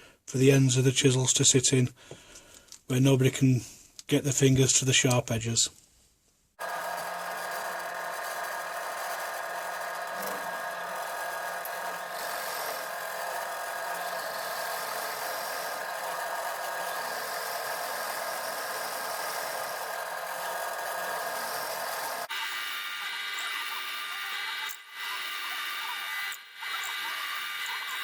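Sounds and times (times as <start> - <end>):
electric drill boring into wood: 6.6 - 28.0.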